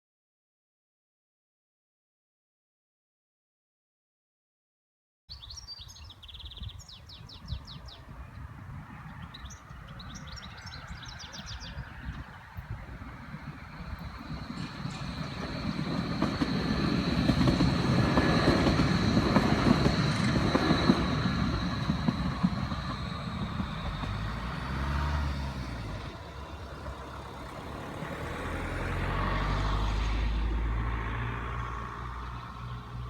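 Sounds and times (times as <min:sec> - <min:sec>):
tram electric hum: 0:06.5 - 0:33.0
tram wheels rumbling on rails: 0:07.4 - 0:33.0
tram high whine: 0:07.5 - 0:33.0.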